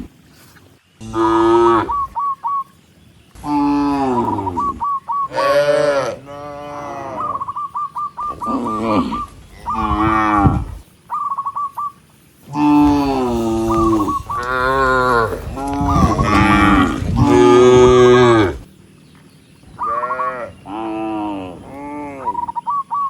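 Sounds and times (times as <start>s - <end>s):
bird chirping: 0.0s - 23.0s
cattle mooing: 1.0s - 2.1s, 3.4s - 7.7s, 8.3s - 10.8s, 12.4s - 18.7s, 19.8s - 22.4s.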